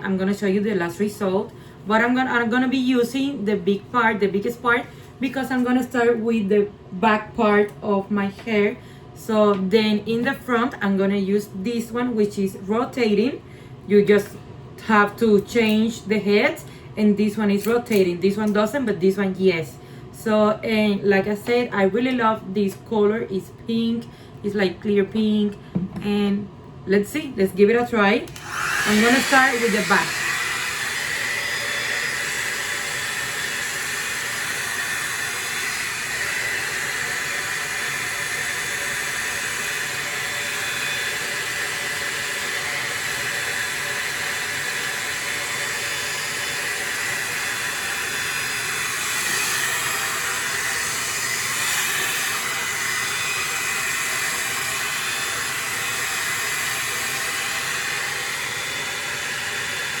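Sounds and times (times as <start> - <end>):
hot air brush fan blowing: 27.0 - 60.0.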